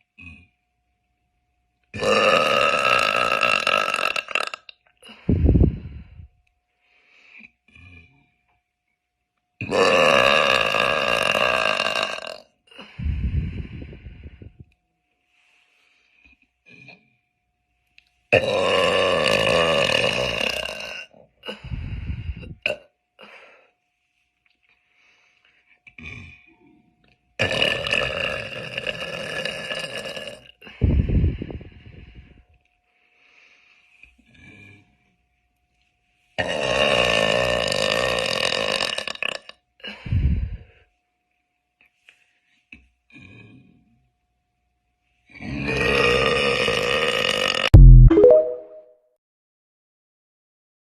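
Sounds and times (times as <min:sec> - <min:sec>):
girl burping loudly: 0:02.0 - 0:04.6.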